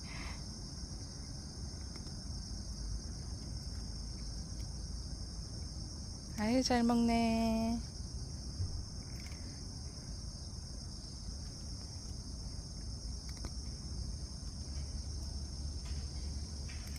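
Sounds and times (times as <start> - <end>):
insects chirping: 0.0 - 16.9
low background rumble: 0.0 - 16.9
faint clicks: 13.2 - 13.8.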